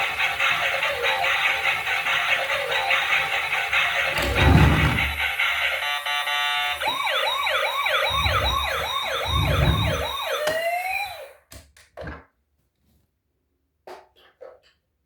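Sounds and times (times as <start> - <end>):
toy electronic siren wailing: 4.0 - 11.4.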